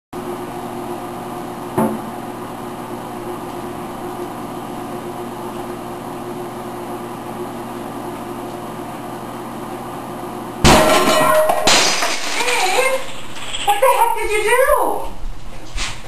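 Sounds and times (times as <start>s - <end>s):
microwave oven humming: 0.2s - 16.0s
loud bang of microwave exploding: 10.6s - 12.4s.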